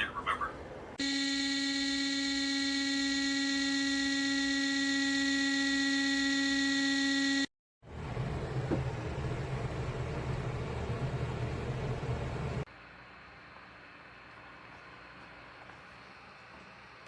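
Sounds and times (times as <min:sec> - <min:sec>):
high-pitched electric buzz: 0:01.0 - 0:07.5.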